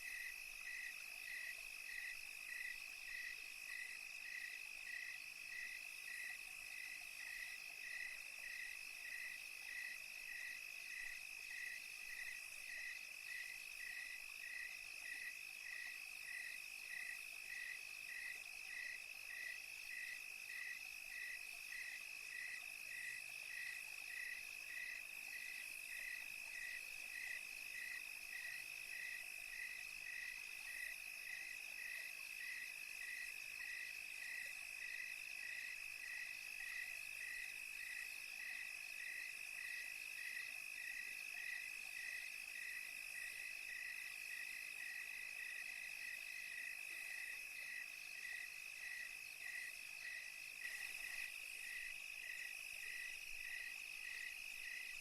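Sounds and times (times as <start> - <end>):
insect chirp: 0.0 - 55.0
crickets trilling: 43.8 - 54.9.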